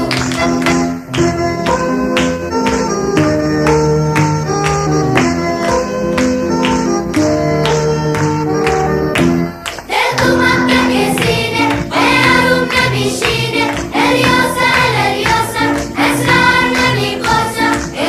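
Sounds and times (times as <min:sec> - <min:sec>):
group singing over instruments: 0:09.9 - 0:18.0.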